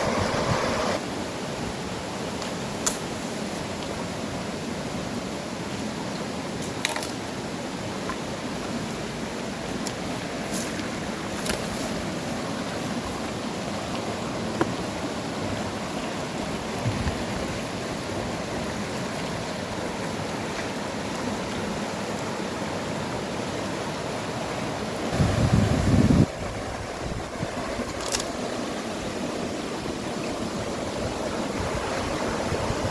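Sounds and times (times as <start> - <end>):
strong wind rushing: 0.0 - 1.0, 25.1 - 27.8, 31.0 - 32.9
wind buffeting microphone: 0.0 - 1.0, 25.1 - 28.0, 30.6 - 32.9
flowing river water: 0.0 - 32.9.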